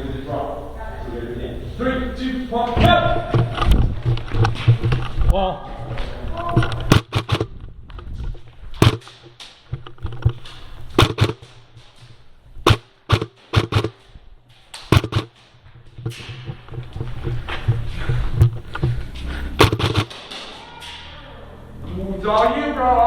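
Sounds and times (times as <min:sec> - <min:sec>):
airsoft gun shots: 0:06.8 - 0:07.6, 0:08.8 - 0:09.8, 0:10.9 - 0:12.0, 0:12.6 - 0:14.2, 0:14.8 - 0:15.6, 0:19.6 - 0:20.6.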